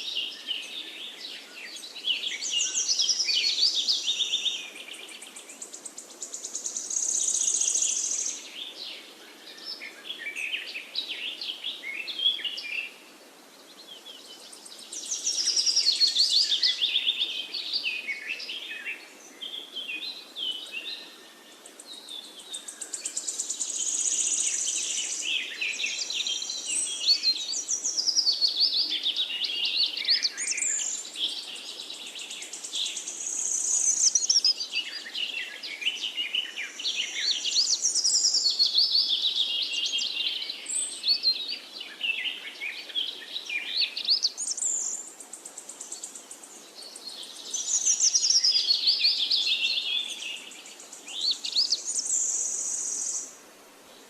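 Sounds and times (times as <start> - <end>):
birds chirping and singing: 13.8 - 53.3.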